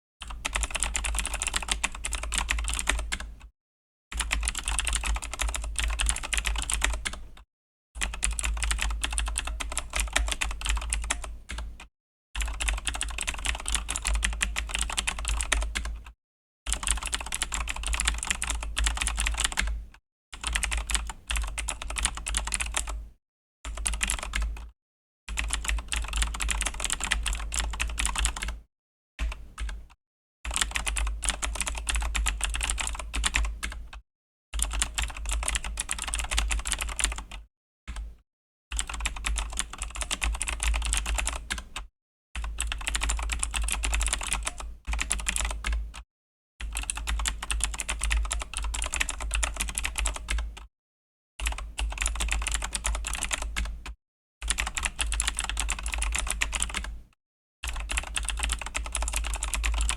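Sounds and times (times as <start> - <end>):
fast typing on mechanical keyboard: 0.2 - 3.3, 4.2 - 7.4, 8.0 - 11.7, 12.4 - 16.0, 16.7 - 19.8, 20.4 - 23.0, 23.7 - 24.7, 25.3 - 28.6, 30.5 - 33.9, 34.6 - 38.1, 38.8 - 46.0, 46.6 - 50.7, 51.4 - 57.0, 57.6 - 59.9.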